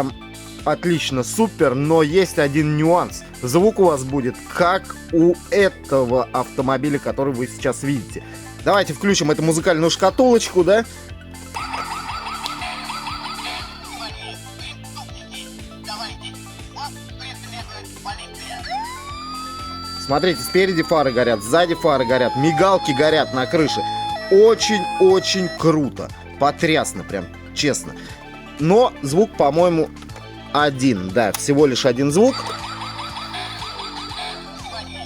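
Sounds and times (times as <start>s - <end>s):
steady music: 0.0s - 35.0s
siren wail rising in pitch: 11.6s - 13.9s, 18.7s - 25.8s
electronic tune with steady beat: 11.6s - 14.0s, 18.7s - 26.1s.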